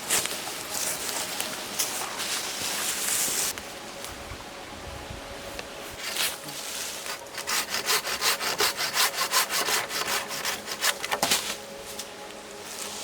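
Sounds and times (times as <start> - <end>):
hand saw cutting wood: 7.0 - 11.4.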